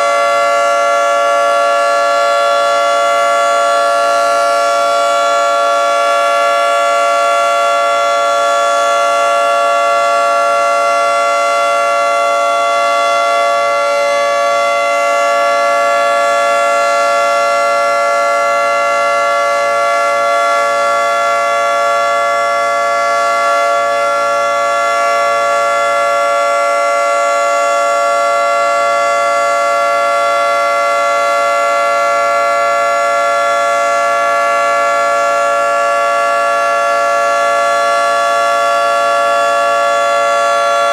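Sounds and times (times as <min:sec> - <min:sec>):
two-tone warning siren: 0:00.0 - 0:40.9.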